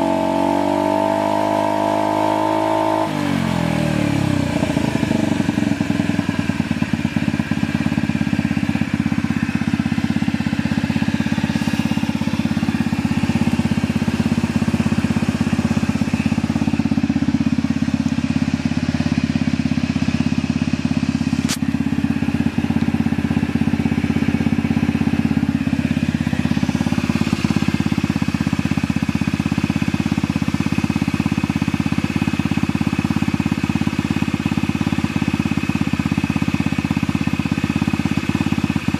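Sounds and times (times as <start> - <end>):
scooter engine idling: 0.0 - 38.9
sharp click: 21.4 - 21.7.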